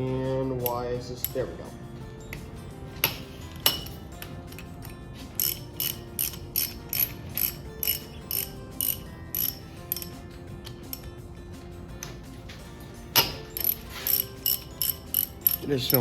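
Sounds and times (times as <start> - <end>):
socket ratchet clicking: 2.3 - 11.2, 13.1 - 16.0.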